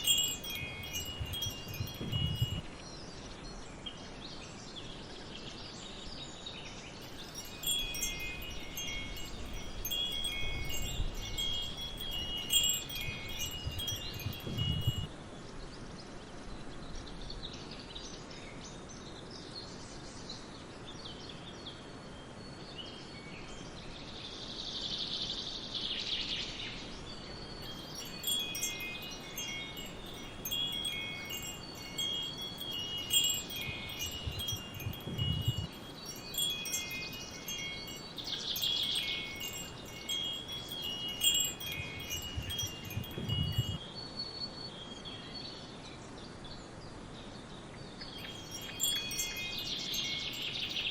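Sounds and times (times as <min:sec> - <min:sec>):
metal wind chimes ringing: 0:00.0 - 0:02.8, 0:07.0 - 0:15.1, 0:27.6 - 0:43.8, 0:48.2 - 0:50.9
background hiss: 0:00.0 - 0:18.4, 0:23.4 - 0:43.8, 0:48.0 - 0:50.9.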